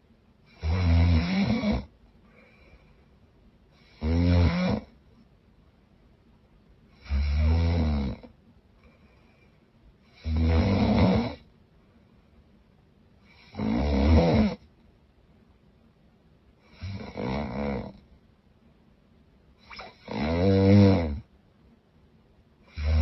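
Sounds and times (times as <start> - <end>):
woman snoring loudly: 0.6 - 1.9, 3.9 - 4.9, 7.0 - 8.2, 10.2 - 11.4, 13.4 - 14.6, 16.8 - 17.9, 19.8 - 21.2, 22.7 - 23.0.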